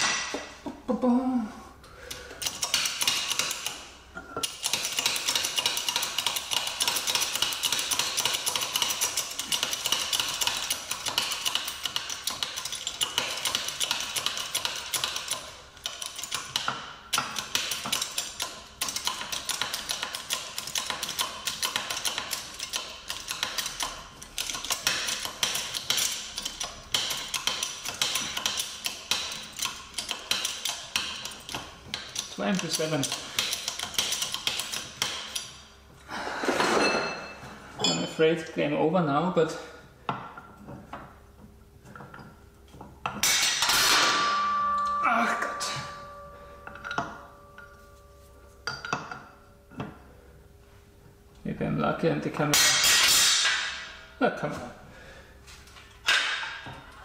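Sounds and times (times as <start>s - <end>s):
ratchet wrench clicking: 2.4s - 3.8s, 4.4s - 35.6s.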